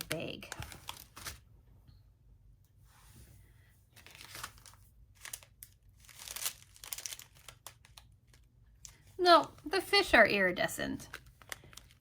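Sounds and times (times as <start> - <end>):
plastic bag crinkling: 0.0 - 1.4, 4.0 - 9.9, 11.0 - 12.0.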